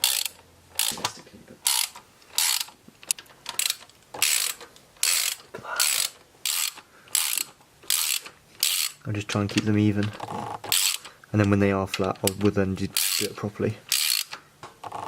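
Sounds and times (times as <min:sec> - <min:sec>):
hand ratchet wrench ratcheting: 0:00.0 - 0:15.0.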